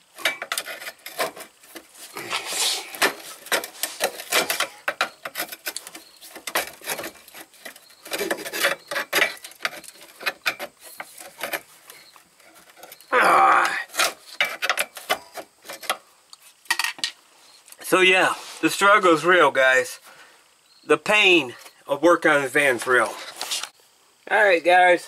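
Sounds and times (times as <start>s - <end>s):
tools scraping and clicking: 0.1s - 13.1s, 13.9s - 17.2s.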